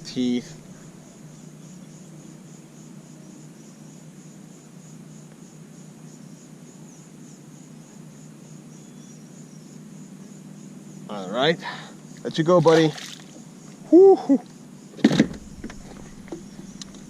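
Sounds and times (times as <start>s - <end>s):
low hum: 0.0s - 2.0s, 15.2s - 17.0s
insects chirping in trill: 0.0s - 17.0s.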